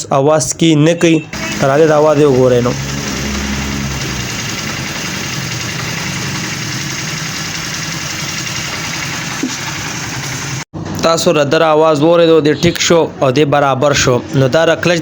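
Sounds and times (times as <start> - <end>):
motorcycle engine idling: 1.4 - 10.6.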